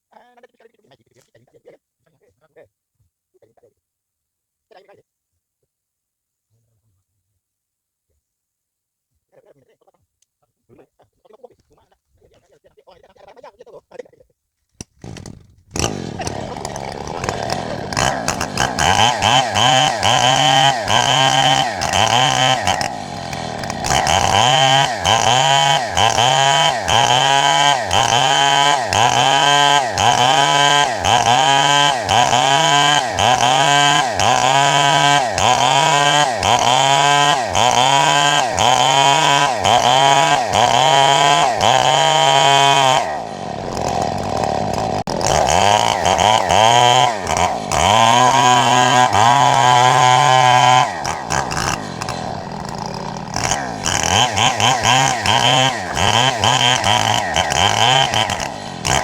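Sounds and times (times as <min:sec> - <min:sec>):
chainsaw cutting wood: 0:14.8 - 0:59.0.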